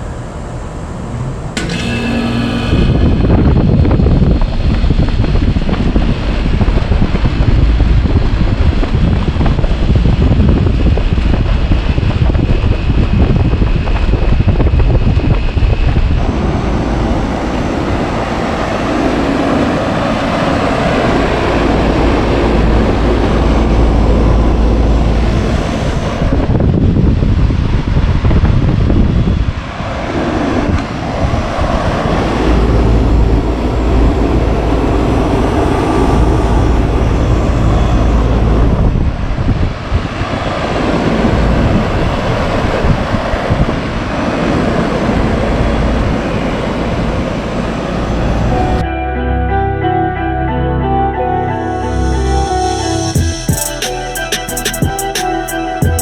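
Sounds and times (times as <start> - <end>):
air conditioner unit running: 0.0 - 29.6
wind buffeting microphone: 2.4 - 48.9.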